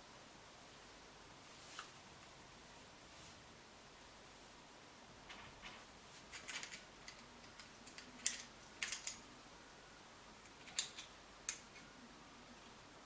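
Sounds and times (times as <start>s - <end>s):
small metal parts clicking and tapping: 5.3s - 9.3s, 10.4s - 11.9s.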